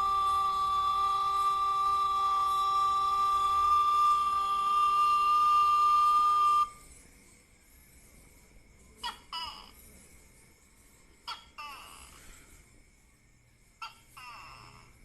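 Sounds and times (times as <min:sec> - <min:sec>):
steady whistle-like tone: 0:00.0 - 0:09.0.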